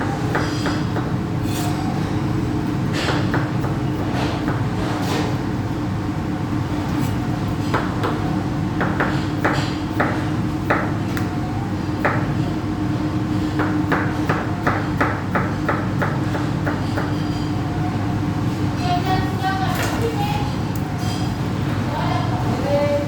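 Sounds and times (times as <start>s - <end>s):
knife chopping on cutting board: 8.8s - 11.3s.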